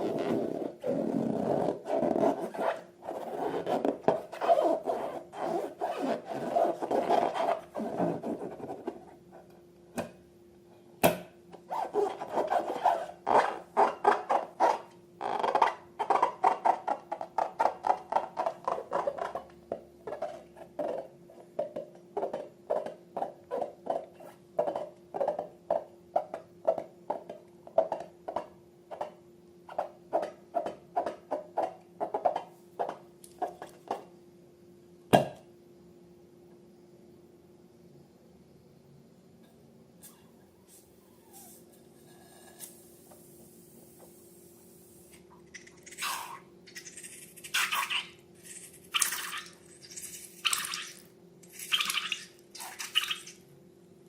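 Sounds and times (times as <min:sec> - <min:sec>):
slime squelching strokes: 0:45.6 - 0:53.4.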